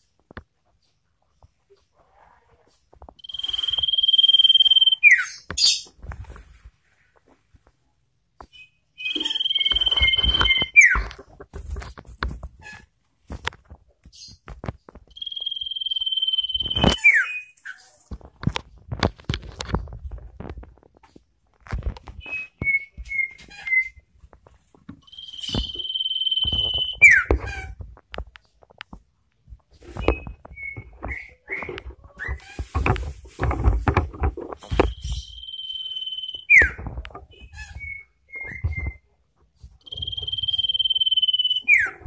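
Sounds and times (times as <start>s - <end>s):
bird whistling: 3.2s - 5.3s, 9.0s - 11.0s, 15.2s - 17.5s, 39.9s - 42.0s.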